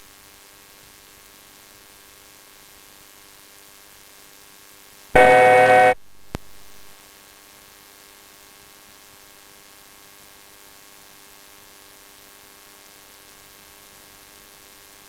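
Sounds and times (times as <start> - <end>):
electronic buzzing tone: 5.2 - 6.9
headset hiss and hum: 5.2 - 7.0.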